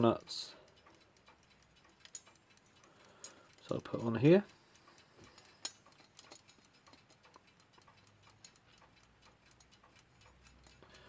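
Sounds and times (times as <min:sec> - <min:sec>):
clock ticking faintly: 0:00.0 - 0:11.0.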